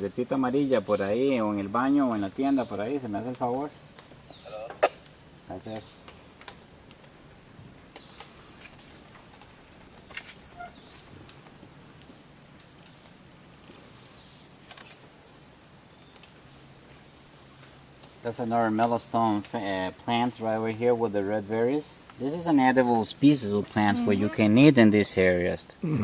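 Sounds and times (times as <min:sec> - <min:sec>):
insects droning: 0:00.0 - 0:26.0
faint clicks: 0:05.0 - 0:07.2.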